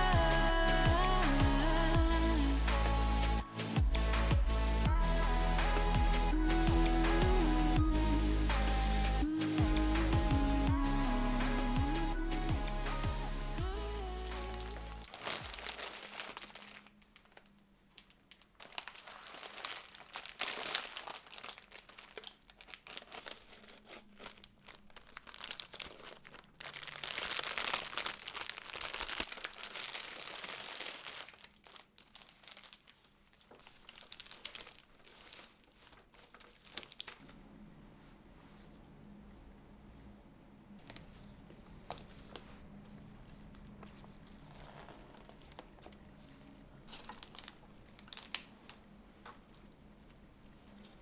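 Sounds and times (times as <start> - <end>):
wrapping crinkling and rustling: 0.0 - 7.5, 12.9 - 39.4, 40.0 - 51.0
wrapping tearing: 14.1 - 37.4, 40.8 - 51.0.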